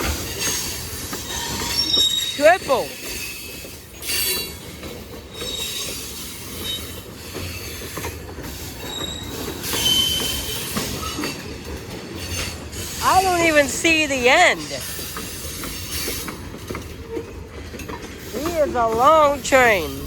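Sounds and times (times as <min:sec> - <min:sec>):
train wheels rumbling on rail: 0:00.0 - 0:20.0
high wheel squeals: 0:00.4 - 0:04.7, 0:05.3 - 0:07.8, 0:08.8 - 0:11.4
clicks at rail joints: 0:15.0 - 0:19.2.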